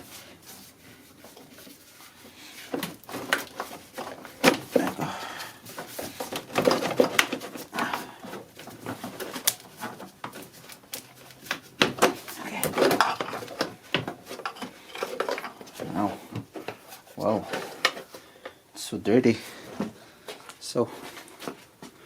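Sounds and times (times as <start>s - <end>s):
plastic parts clicking and scraping: 2.5s - 18.6s.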